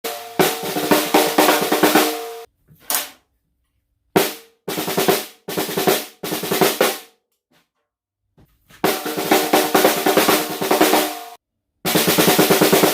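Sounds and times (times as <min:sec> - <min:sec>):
snare drum rapid strokes: 0:00.1 - 0:02.5, 0:08.8 - 0:12.9.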